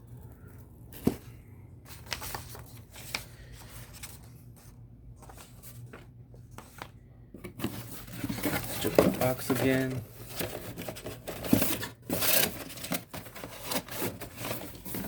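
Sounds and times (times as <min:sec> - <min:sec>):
paper packaging rustling: 0:00.1 - 0:15.0.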